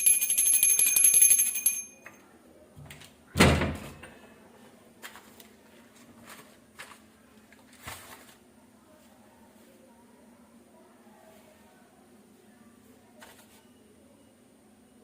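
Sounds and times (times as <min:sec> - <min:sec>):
metal hand bell ringing: 0:00.0 - 0:02.2.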